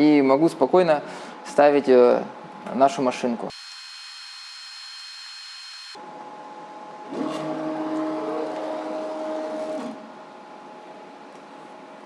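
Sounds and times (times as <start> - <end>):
electric motor hum: 3.5 - 6.0.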